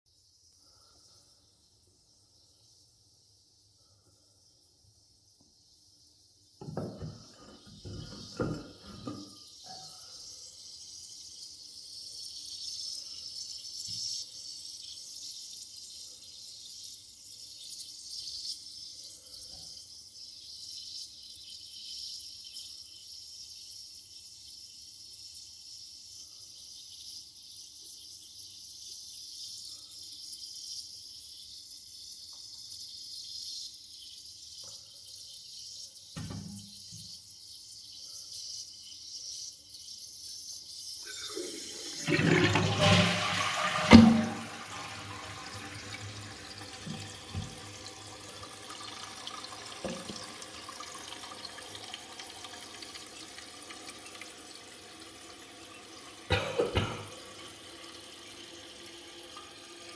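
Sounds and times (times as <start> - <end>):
toilet hissing: 5.5 - 59.9
rush of running water: 41.1 - 54.3.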